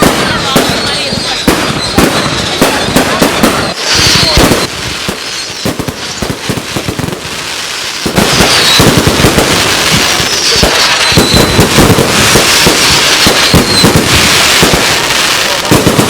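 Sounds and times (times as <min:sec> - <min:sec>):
fireworks crackling bangs: 0:00.0 - 0:16.0
high falling whistles: 0:00.8 - 0:02.6, 0:03.6 - 0:05.8, 0:10.3 - 0:11.7, 0:13.0 - 0:14.0.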